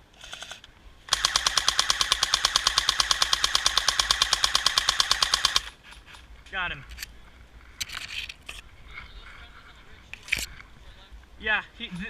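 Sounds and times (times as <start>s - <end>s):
airsoft rifle full-auto burst: 0.2s - 5.8s.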